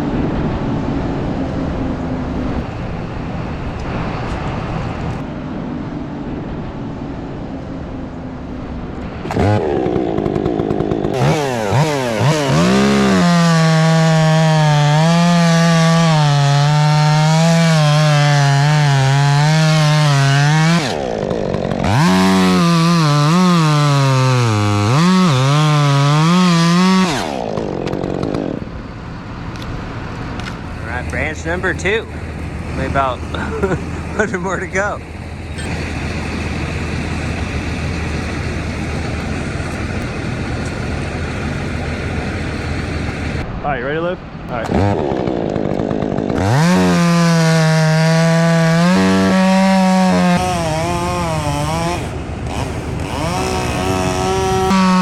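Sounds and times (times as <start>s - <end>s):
steady engine noise: 0.0s - 55.0s
chainsaw cutting through wood: 9.0s - 28.7s, 30.6s - 43.4s, 44.6s - 55.0s.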